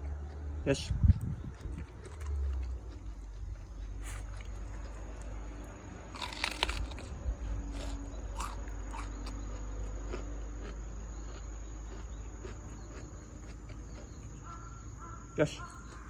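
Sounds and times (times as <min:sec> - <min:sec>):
dog crunching cabbage: 0:00.0 - 0:14.3.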